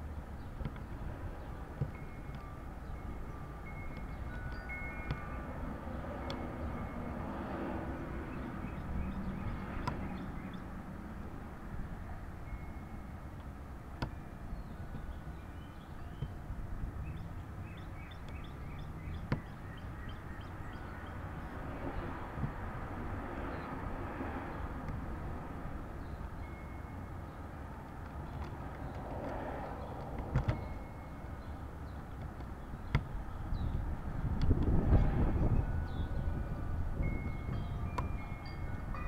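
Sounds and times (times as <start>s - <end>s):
wind rumble on microphone: 14.4s - 26.6s, 31.4s - 39.0s.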